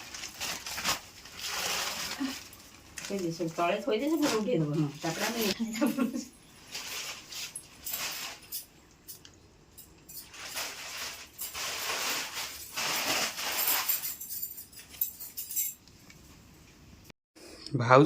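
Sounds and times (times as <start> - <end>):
rustling: 0.0 - 8.7, 10.1 - 15.1
light clinks and knocks: 13.5 - 16.2.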